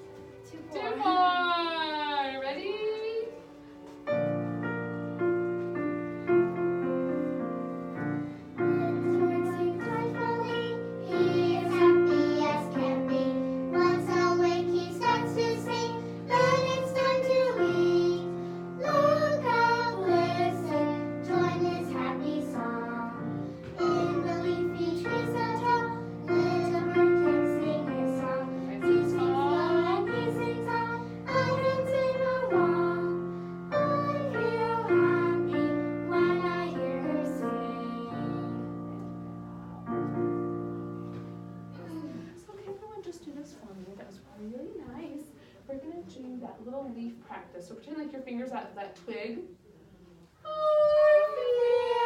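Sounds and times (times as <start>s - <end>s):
piano accompaniment: 0.0s - 42.5s
children and woman singing: 8.6s - 38.9s, 50.4s - 52.0s.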